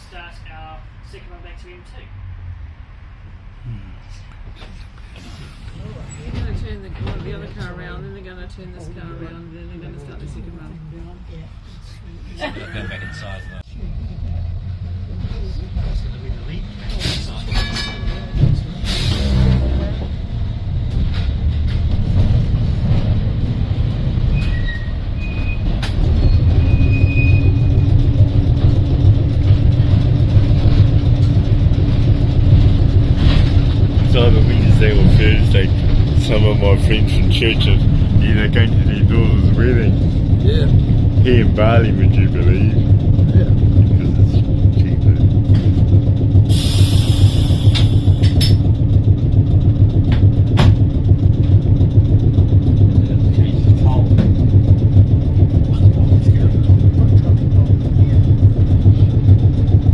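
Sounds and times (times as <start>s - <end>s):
electric tram rumbling: 0.0s - 59.9s
tram wheel squeals: 12.6s - 13.7s, 17.0s - 20.1s, 24.3s - 28.2s
steady hum: 31.5s - 59.9s.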